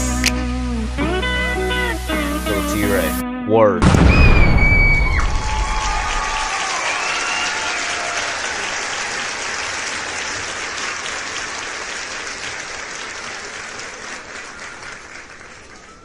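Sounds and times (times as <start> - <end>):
crowd applause: 4.6 - 16.0.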